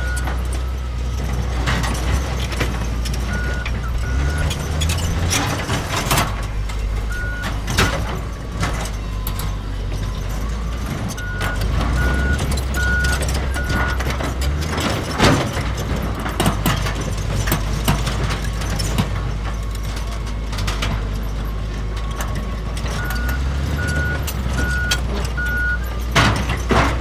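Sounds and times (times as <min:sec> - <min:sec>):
reversing alarm beeps: 0:00.0 - 0:00.3, 0:03.3 - 0:05.0, 0:07.0 - 0:14.2, 0:22.9 - 0:25.9
bulldozer diesel engine rumbling: 0:00.0 - 0:27.0
knocks and clanks: 0:00.1 - 0:27.0.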